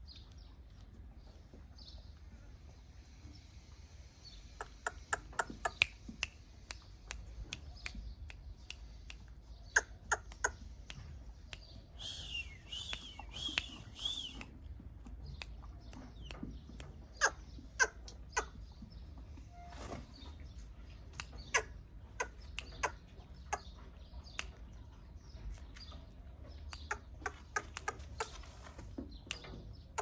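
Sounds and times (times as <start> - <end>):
bird harsh calls: 8.9 - 14.4, 15.9 - 20.5, 21.2 - 24.6, 26.7 - 30.0.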